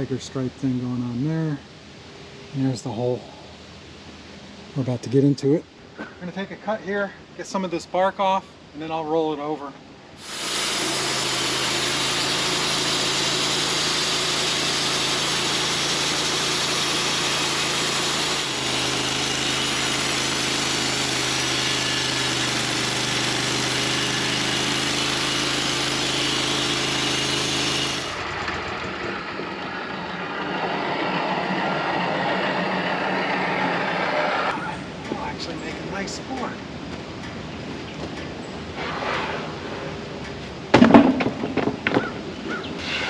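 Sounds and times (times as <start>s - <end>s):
saw blade cutting log: 10.2s - 34.6s, 42.8s - 43.0s
sawmill engine running: 10.2s - 36.8s.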